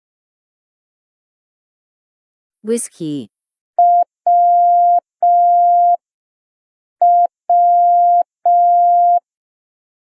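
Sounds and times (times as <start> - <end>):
morse code beeps: 3.8 - 6.0, 7.0 - 9.2.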